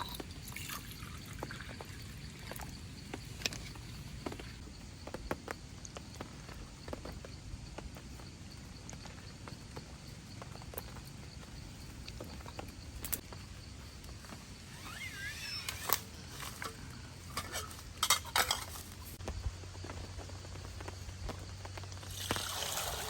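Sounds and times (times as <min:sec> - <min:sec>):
metal cookware scraping squeak: 0:14.7 - 0:19.1
metal cookware clinking: 0:16.5 - 0:19.1
rain patter: 0:19.2 - 0:23.0.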